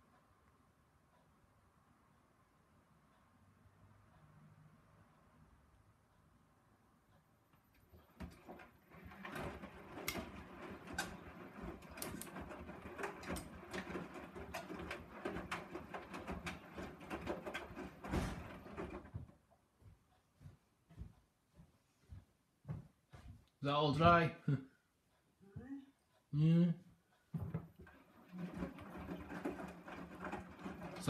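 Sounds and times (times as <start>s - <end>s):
objects being handled: 7.8s - 20.5s, 27.3s - 31.0s.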